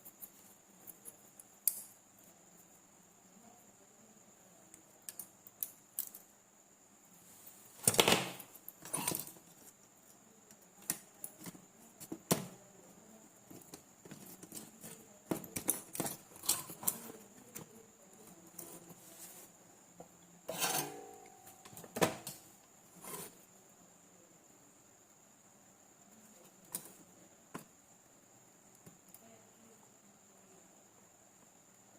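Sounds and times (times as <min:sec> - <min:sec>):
metal parts and tools clinking: 0:08.6 - 0:09.5, 0:14.2 - 0:17.2.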